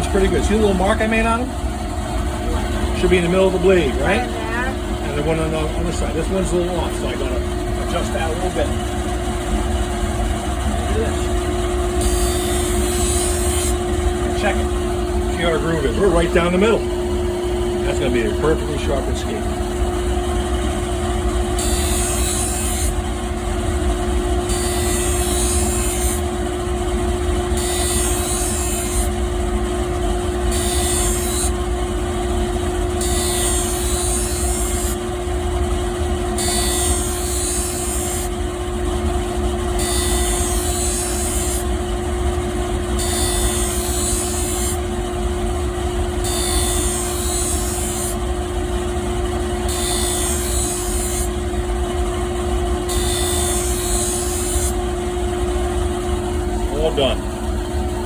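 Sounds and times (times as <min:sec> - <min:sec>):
sharpening machine motor hum: 0:00.0 - 0:58.0.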